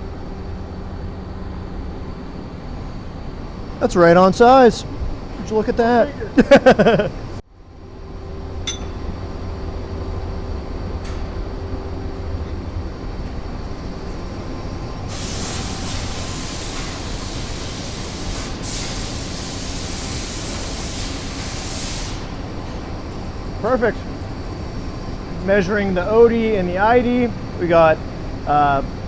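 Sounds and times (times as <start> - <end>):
loud hiss: 15.1 - 22.4.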